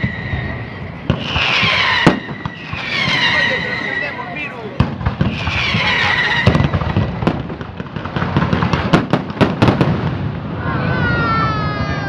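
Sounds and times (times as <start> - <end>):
falling whistling tone: 0.0 - 4.7, 5.3 - 7.2
fireworks bangs and crackles: 0.0 - 12.0
low rumble of explosions: 0.0 - 12.0.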